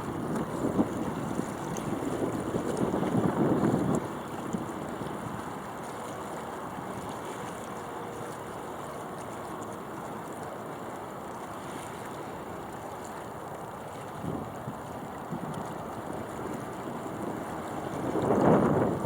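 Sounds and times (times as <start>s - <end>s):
wind buffeting microphone: 0.0s - 6.3s, 14.0s - 19.0s.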